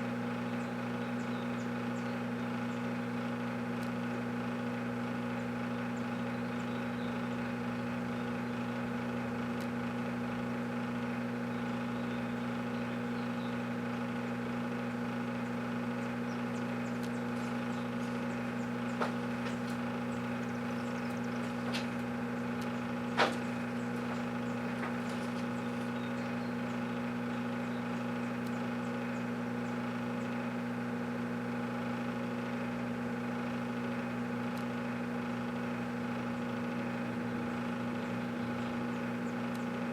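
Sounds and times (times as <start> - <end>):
microwave oven humming: 0.0 - 39.9
short sharp pops: 23.1 - 23.5.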